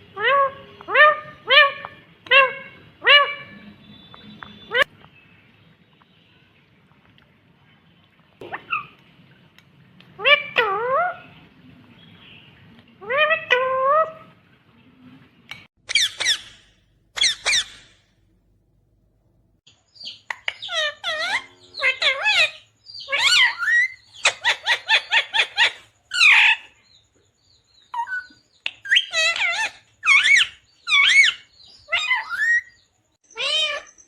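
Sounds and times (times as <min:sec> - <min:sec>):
parakeet squawking: 0:00.2 - 0:04.9, 0:15.8 - 0:18.0, 0:20.1 - 0:26.7, 0:28.0 - 0:32.7, 0:33.3 - 0:33.9
parakeet chattering: 0:15.8 - 0:18.0, 0:20.0 - 0:26.6
parakeet whistled calls: 0:15.9 - 0:16.6, 0:17.2 - 0:18.0.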